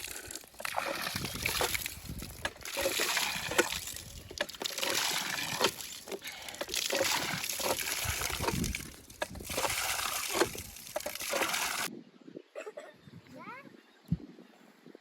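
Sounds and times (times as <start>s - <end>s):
water splashing and sloshing: 0.0s - 11.9s.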